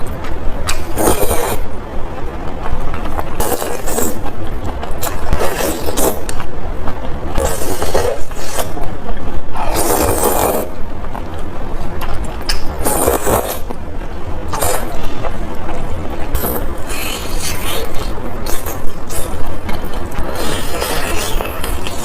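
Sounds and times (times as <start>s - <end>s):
wet mouth chewing sounds: 0.2s - 1.7s, 2.9s - 6.5s, 12.0s - 13.8s
noisy noodle slurps: 9.6s - 10.8s, 12.8s - 13.7s.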